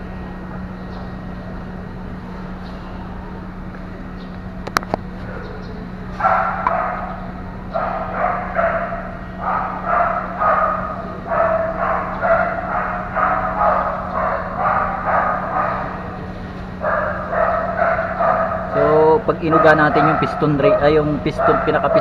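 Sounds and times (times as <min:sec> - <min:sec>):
steady low hum: 0:00.0 - 0:22.0
dog barking: 0:06.2 - 0:16.2, 0:16.8 - 0:18.8, 0:19.5 - 0:22.0.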